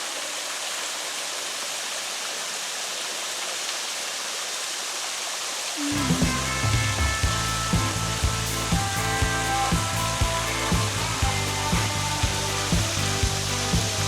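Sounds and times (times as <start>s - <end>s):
waterfall rushing: 0.0s - 14.0s
steady low tones: 5.8s - 14.0s.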